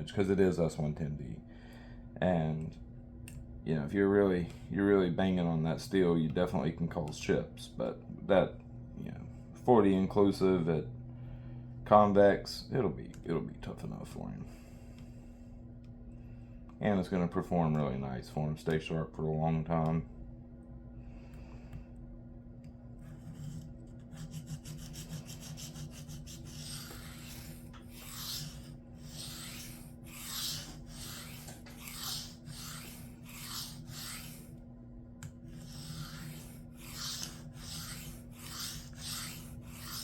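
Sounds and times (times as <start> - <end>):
knife rasping on sharpening plate: 24.2 - 34.4, 35.6 - 40.0.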